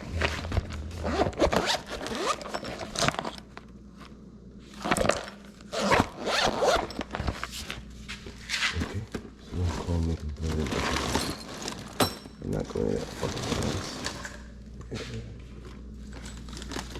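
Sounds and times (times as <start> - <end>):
rasping zipper-like scrapes: 0.0 - 2.6, 5.7 - 6.9.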